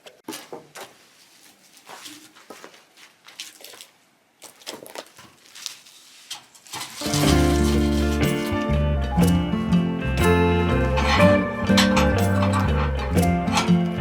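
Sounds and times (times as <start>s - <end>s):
scuffs and soft knocks: 0.0s - 8.3s.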